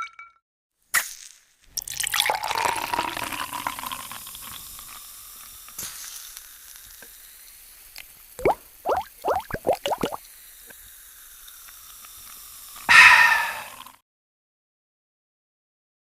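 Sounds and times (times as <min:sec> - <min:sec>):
drink fizzing in a glass: 0:01.8 - 0:05.0, 0:08.4 - 0:10.2
liquid plops rising in pitch: 0:08.4 - 0:10.2.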